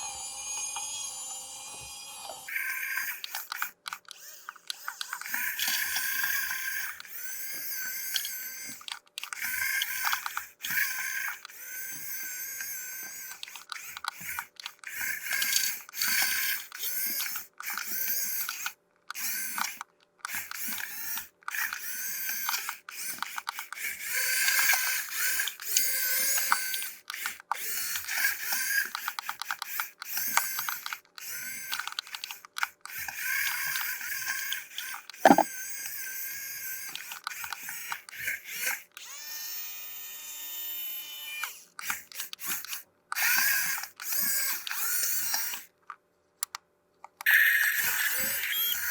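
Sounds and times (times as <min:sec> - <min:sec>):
steady whirring tone: 0:00.0 - 0:08.8, 0:35.2 - 0:35.5.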